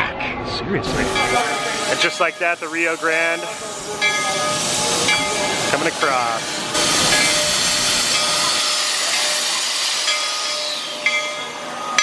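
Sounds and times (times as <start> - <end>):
steam locomotive venting steam: 0.8 - 12.0.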